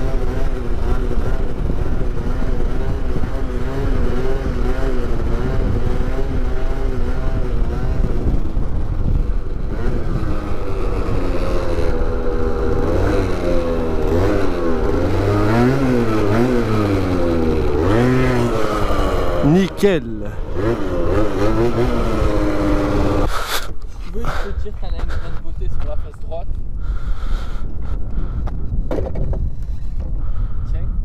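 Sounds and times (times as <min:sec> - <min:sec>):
scooter engine revving: 0:00.0 - 0:24.6.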